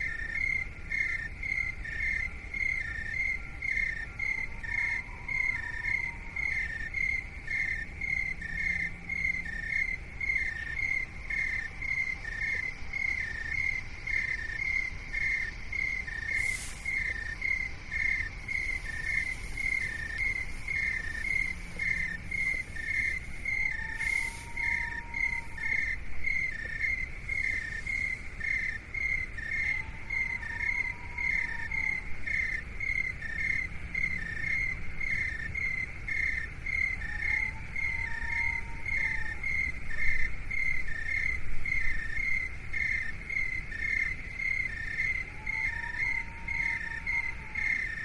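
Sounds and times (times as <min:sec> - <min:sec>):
insect chirping: 0:00.0 - 0:48.0
low rumble: 0:06.4 - 0:30.3.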